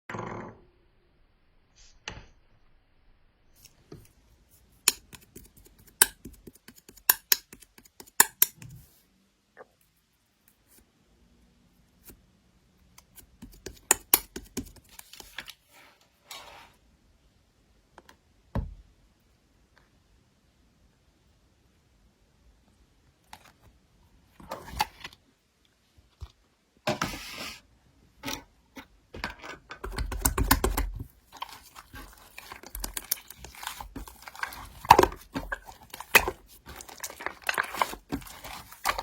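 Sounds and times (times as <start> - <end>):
small objects clicking and tapping: 4.8 - 8.8, 13.1 - 15.5, 29.2 - 39.0.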